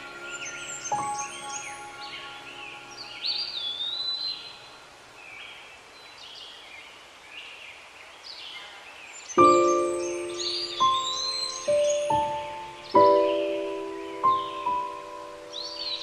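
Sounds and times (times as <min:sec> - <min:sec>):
whistled bird call: 0:00.0 - 0:04.7, 0:09.4 - 0:16.0
background music notes: 0:00.0 - 0:04.8, 0:09.4 - 0:16.0
birds chirping and calling: 0:00.0 - 0:16.0.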